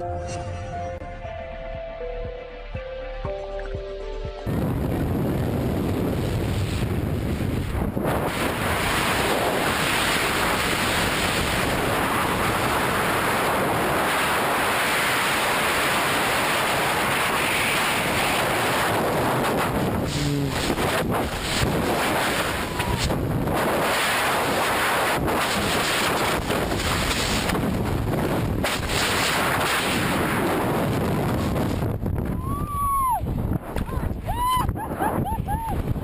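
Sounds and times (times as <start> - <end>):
wind rushing over microphone: 4.5 - 36.0.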